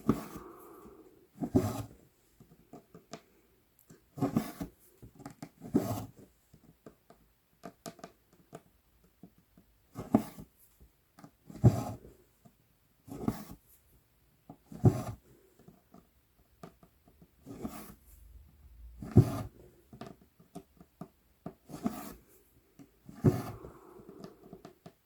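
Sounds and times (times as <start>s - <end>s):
thread rasping through cloth: 0.0s - 2.9s.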